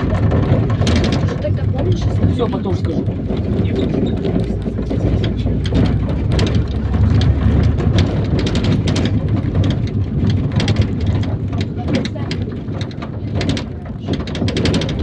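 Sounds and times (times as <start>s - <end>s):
engine and road rumble: 0.0s - 15.0s
rattles and clicks from vehicle body: 0.0s - 15.0s.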